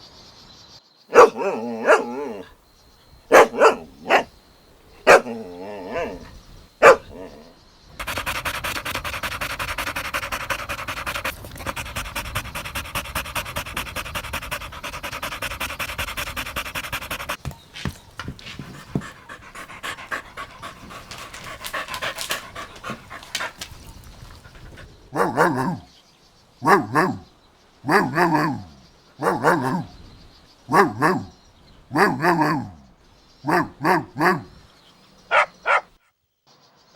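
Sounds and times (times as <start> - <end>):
dog barking: 1.1 - 2.6, 3.3 - 4.3, 5.0 - 23.8, 25.1 - 25.9, 26.6 - 30.0, 30.7 - 34.6, 35.3 - 36.0
dog panting: 1.2 - 2.4, 3.3 - 4.3, 5.1 - 25.8, 26.6 - 27.2, 27.9 - 29.9, 30.7 - 32.8, 33.5 - 34.5.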